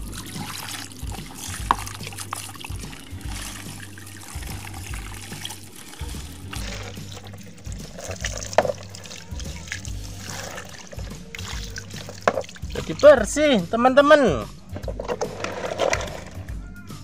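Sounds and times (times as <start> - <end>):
low steady hum: 0.0 - 13.4
water trickling and splashing: 0.0 - 13.4.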